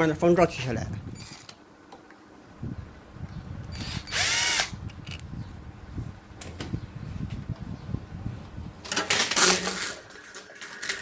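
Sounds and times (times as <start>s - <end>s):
power screwdriver running: 3.7s - 4.8s.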